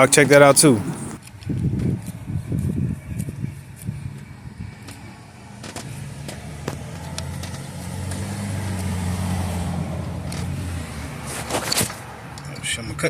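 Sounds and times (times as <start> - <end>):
vehicle engine running: 0.0 - 1.2.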